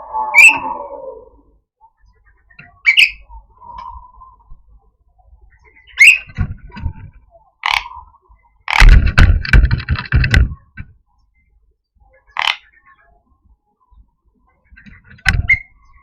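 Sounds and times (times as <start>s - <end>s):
myna harsh rasping calls: 0.0s - 1.4s, 7.6s - 8.1s.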